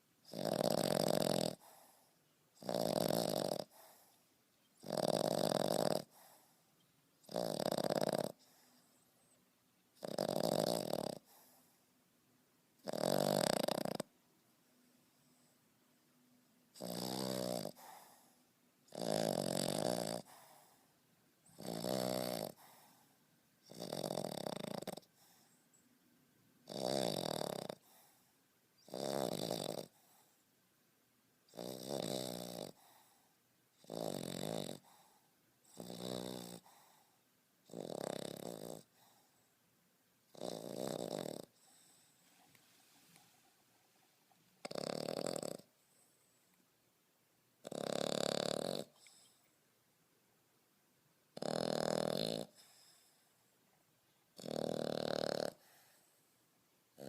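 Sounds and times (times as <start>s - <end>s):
puppy snoring: 0.0s - 11.8s, 12.8s - 14.1s, 16.7s - 25.6s, 26.6s - 30.4s, 31.5s - 39.5s, 40.3s - 43.5s, 44.6s - 46.5s, 47.6s - 49.5s, 51.3s - 53.5s, 54.3s - 56.3s.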